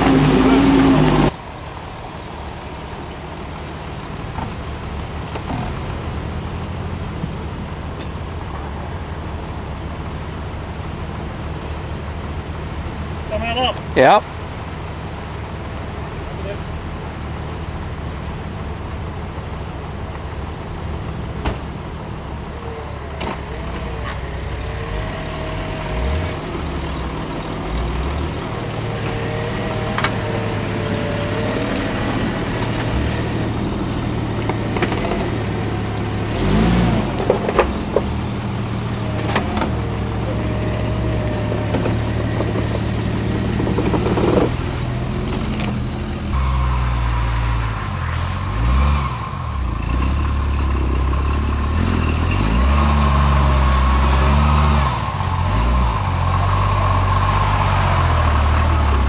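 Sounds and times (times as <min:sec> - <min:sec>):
off-road engine running: 0:00.0 - 0:59.0.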